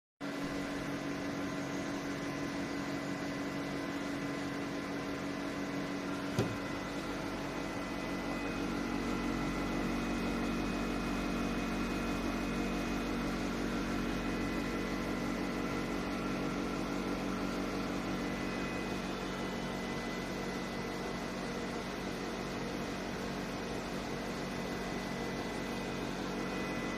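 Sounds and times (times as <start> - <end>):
air conditioner whirring: 0.2 - 26.9
air conditioner click: 6.2 - 7.1.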